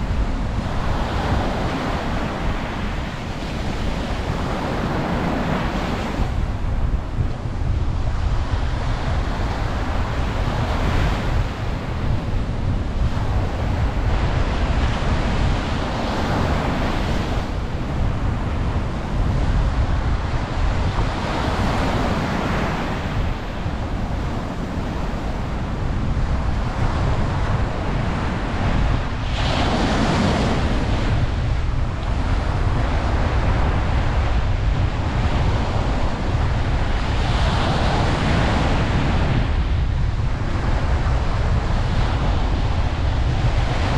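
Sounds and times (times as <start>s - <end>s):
ocean waves breaking on beach: 0.0s - 43.9s.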